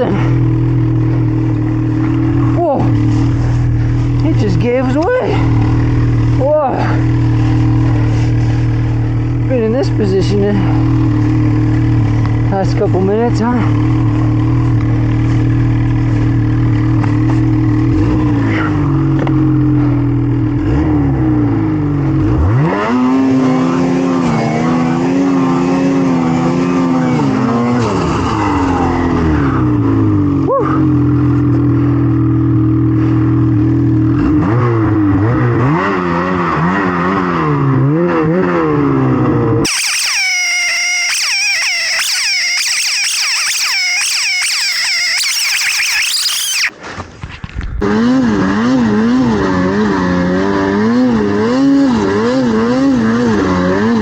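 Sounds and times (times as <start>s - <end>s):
snowmobile engine revving: 20.6s - 30.9s, 39.6s - 46.7s, 47.8s - 54.0s.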